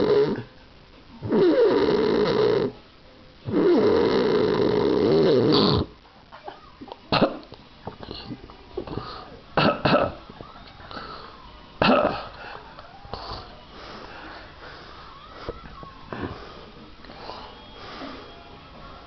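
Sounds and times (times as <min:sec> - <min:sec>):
man snoring: 0:00.0 - 0:00.5, 0:01.2 - 0:02.8, 0:03.5 - 0:05.9.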